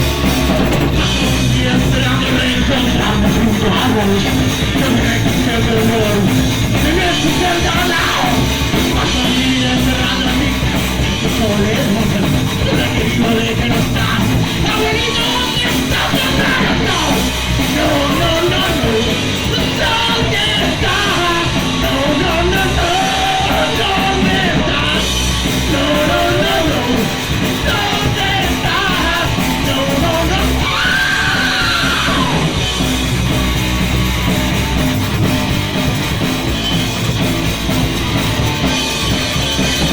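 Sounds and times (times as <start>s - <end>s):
yelled sung lead vocal: 0.0s - 34.3s
punk rock band playing live: 0.0s - 39.9s.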